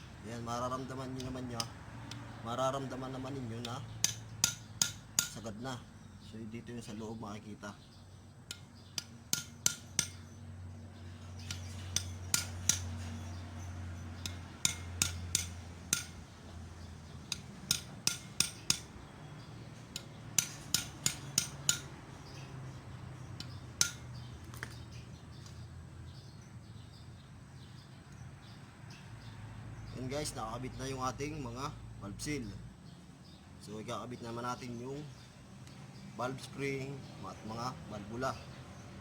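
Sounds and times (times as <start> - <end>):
hammer tapping on metal: 3.6 - 5.5, 8.5 - 10.2, 11.4 - 13.1, 14.2 - 16.3, 17.2 - 19.0, 19.8 - 22.0, 23.4 - 24.2.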